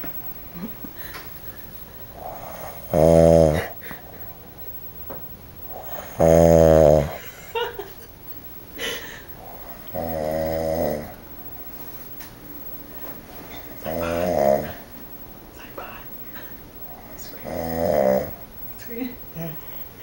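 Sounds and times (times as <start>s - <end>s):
quiet breathing: 0.9s - 7.3s, 8.7s - 18.6s
man snoring loudly: 2.1s - 4.2s, 5.7s - 7.4s, 9.4s - 11.2s, 13.8s - 14.8s, 17.4s - 18.4s.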